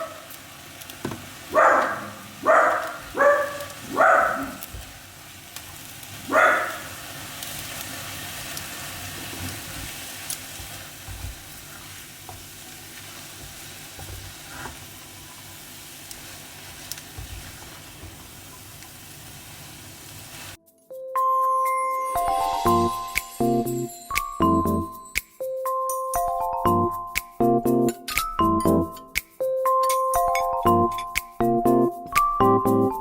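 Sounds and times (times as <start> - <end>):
food sizzling in a frying pan: 0.0 - 20.6, 22.1 - 24.9
dog barking: 1.5 - 4.7, 6.3 - 7.0.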